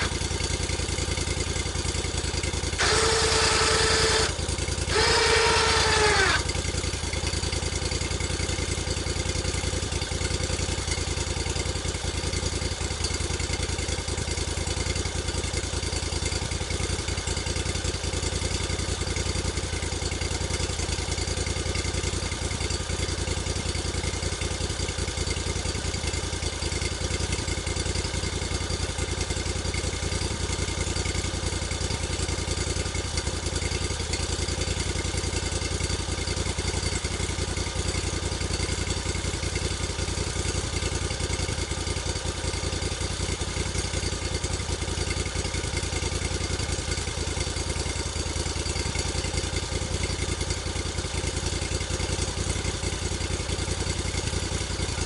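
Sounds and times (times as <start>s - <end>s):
sawmill engine running: 0.0s - 12.4s, 29.6s - 55.0s.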